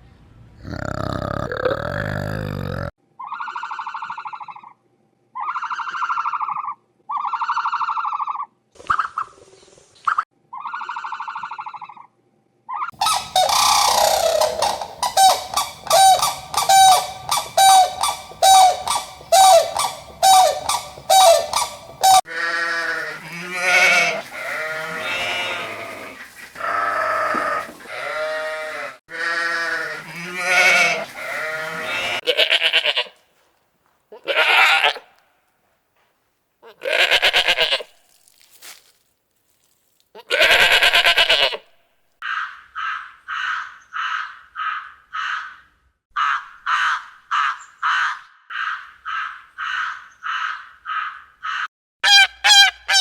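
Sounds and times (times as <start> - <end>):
animal calls: 12.7 - 33.0.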